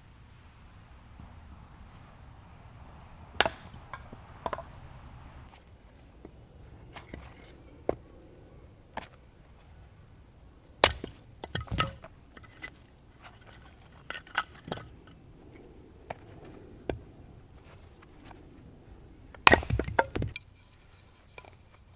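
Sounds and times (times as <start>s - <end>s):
wood cracking and snapping: 10.8s - 12.6s, 19.4s - 20.4s.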